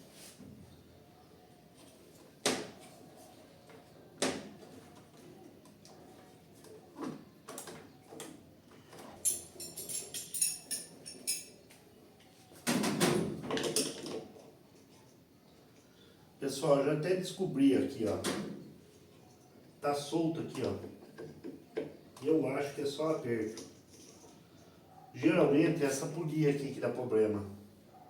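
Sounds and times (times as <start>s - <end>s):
metallic jingling and rattling: 9.2s - 11.6s, 23.2s - 24.7s.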